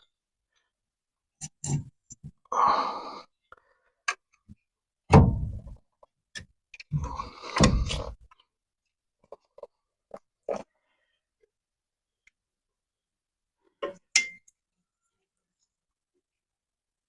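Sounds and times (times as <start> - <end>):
heavy metal thunk: 5.1 - 5.8
metal clunks and knocks: 5.1 - 5.8.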